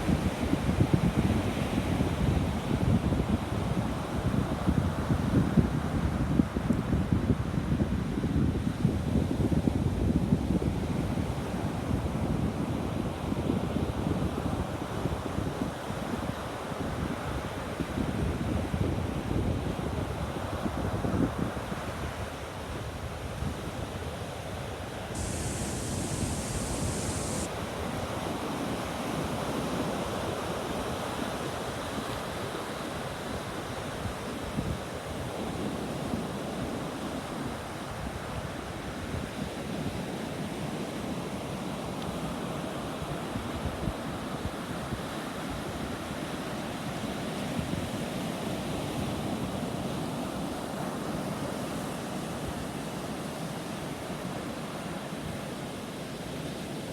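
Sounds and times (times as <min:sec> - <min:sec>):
wind on microphone: 0:25.2 - 0:27.5.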